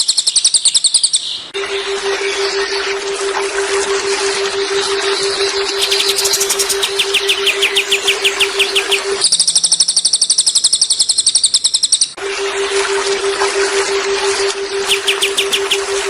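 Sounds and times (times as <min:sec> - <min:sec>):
rapid high two-pitched trill: 0:01.6 - 0:09.2, 0:13.6 - 0:16.0
low hum: 0:01.6 - 0:09.3, 0:12.2 - 0:16.0
songbirds chirping: 0:04.9 - 0:12.2, 0:14.9 - 0:16.0.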